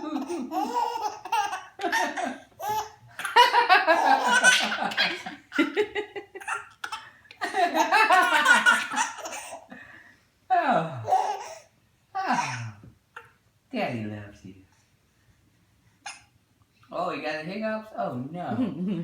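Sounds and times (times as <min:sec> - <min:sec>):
baby laughing: 0:00.0 - 0:09.7, 0:11.0 - 0:13.4.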